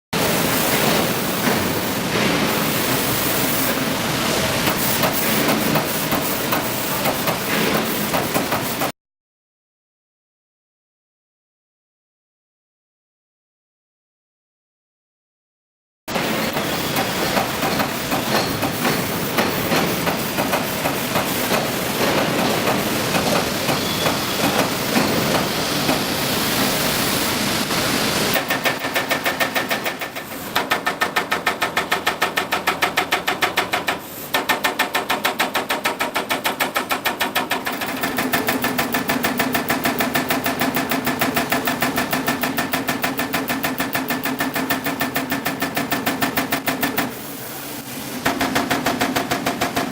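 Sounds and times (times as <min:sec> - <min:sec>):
punch press punching sheet metal: 0:28.4 - 0:47.2, 0:48.2 - 0:49.9.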